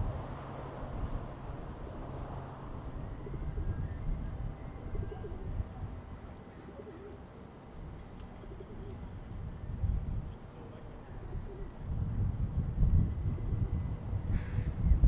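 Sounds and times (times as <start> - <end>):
bird cooing: 6.7 - 7.2.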